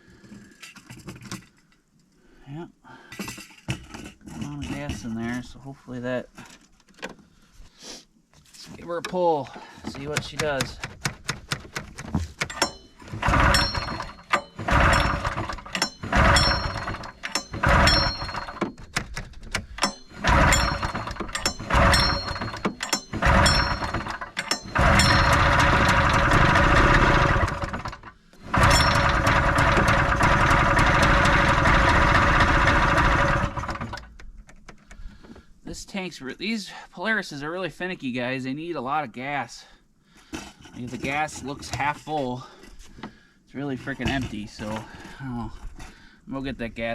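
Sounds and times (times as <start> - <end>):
recoil starter pulls: 9.0 - 35.4
snowmobile engine running: 13.2 - 18.6, 19.9 - 33.7.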